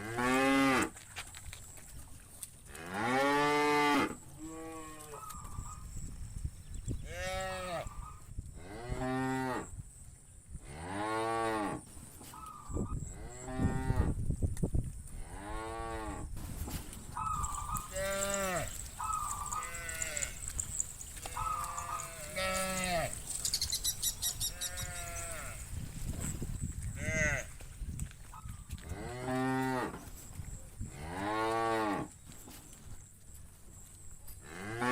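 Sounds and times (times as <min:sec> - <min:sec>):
cows mooing: 0:17.2 - 0:25.6.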